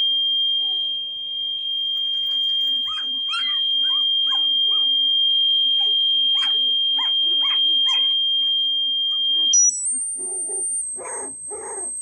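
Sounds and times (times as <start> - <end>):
high electronic test tone: 0.6 - 11.0
puppies crying: 1.9 - 5.2, 5.8 - 12.0.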